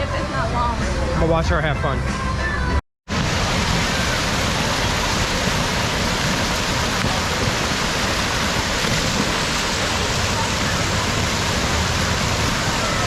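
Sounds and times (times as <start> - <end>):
running water: 3.1 - 13.0.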